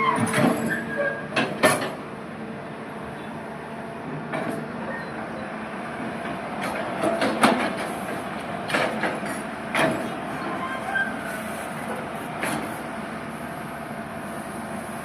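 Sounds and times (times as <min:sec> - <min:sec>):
metallic clanks of excavator bucket: 0:00.0 - 0:02.0
excavator engine running: 0:00.0 - 0:15.0.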